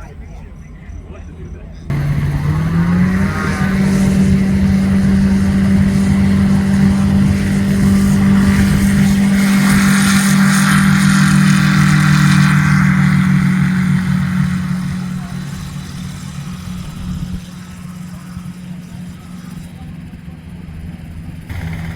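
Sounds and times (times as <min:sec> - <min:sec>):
propeller aircraft engine running: 0:00.0 - 0:21.9
rushing noise: 0:01.9 - 0:17.4.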